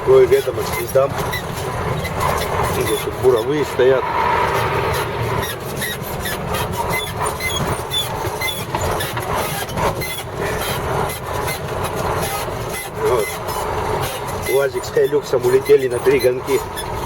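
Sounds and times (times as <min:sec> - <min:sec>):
diesel truck engine: 0:00.0 - 0:17.0
road noise: 0:00.0 - 0:17.0
short high squeaks: 0:00.3 - 0:11.6.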